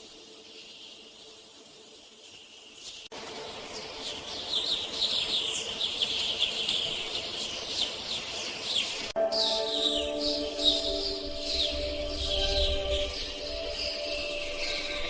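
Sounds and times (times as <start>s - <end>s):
birds chirping: 0.0s - 15.0s
steady hiss: 0.0s - 15.0s
music with held notes: 9.2s - 15.0s.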